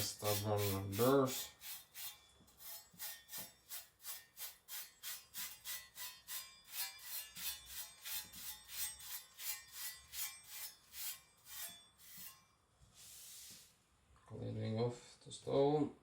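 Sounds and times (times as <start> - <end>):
cleaver strokes on whetstone: 0.0 - 12.4.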